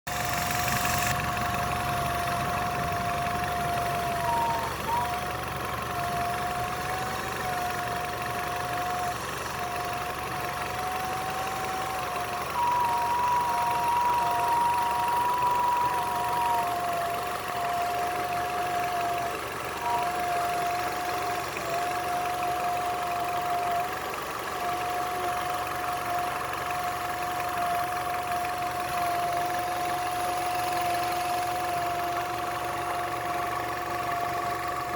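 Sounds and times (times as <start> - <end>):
car engine running: 0.1 - 34.9
high whistle from hose: 9.8 - 19.2.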